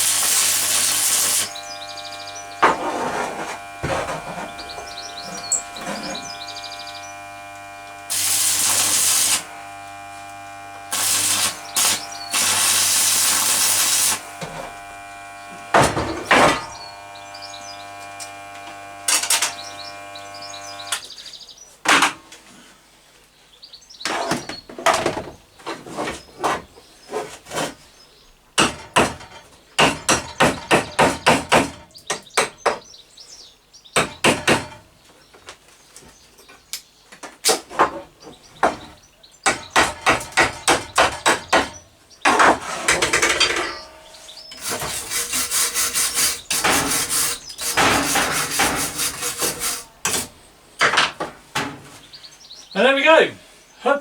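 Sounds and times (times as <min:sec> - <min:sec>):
loud hiss bursts: 0:00.0 - 0:21.1, 0:44.6 - 0:50.4
machine hum: 0:00.0 - 0:21.1.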